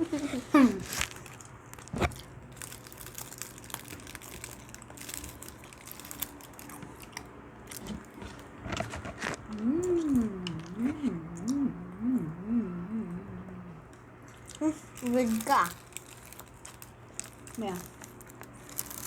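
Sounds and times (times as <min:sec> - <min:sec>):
food wrapping crinkling: 0:00.0 - 0:09.6, 0:14.3 - 0:19.0
biting and chewing: 0:00.1 - 0:11.6, 0:13.8 - 0:19.0
person humming: 0:09.5 - 0:14.0.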